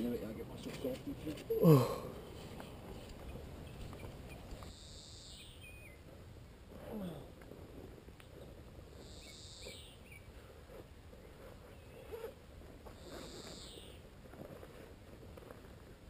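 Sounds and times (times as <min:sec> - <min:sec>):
birds calling: 0:00.4 - 0:06.0, 0:08.2 - 0:10.4, 0:13.0 - 0:14.1
small bird chirps: 0:02.4 - 0:06.0, 0:08.2 - 0:10.3, 0:13.0 - 0:14.0
faint rustling: 0:05.9 - 0:16.0.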